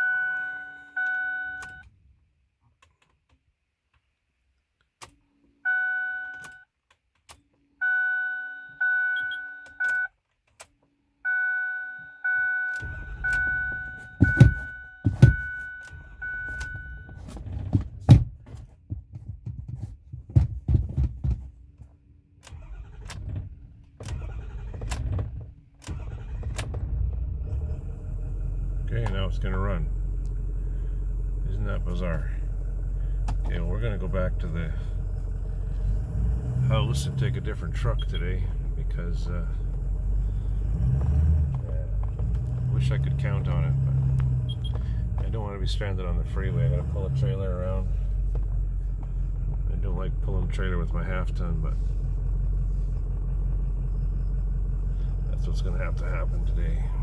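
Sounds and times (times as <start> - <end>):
dashboard warning chime dinging: 0.0 - 1.9, 5.6 - 6.7, 7.8 - 10.2, 11.2 - 17.4, 36.8 - 39.8, 42.0 - 48.0
diesel engine cranking and running rough: 12.7 - 18.4, 21.2 - 57.0.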